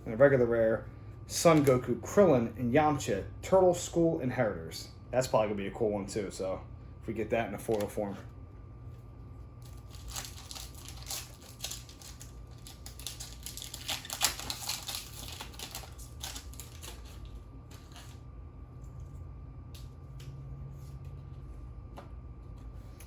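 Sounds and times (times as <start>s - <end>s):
foil wrapper crinkling and tearing: 9.6s - 18.2s.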